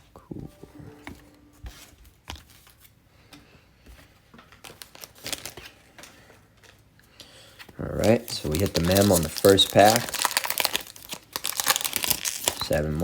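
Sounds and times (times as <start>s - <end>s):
trading cards and foil packs rustling: 4.4s - 13.0s.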